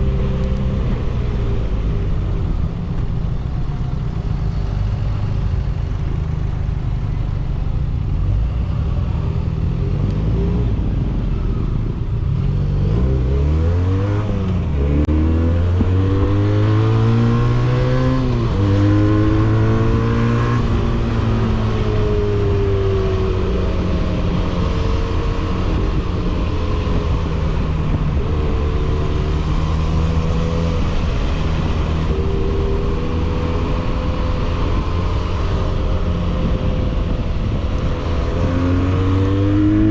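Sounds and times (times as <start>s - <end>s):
motorcycle engine accelerating: 8.0s - 39.9s.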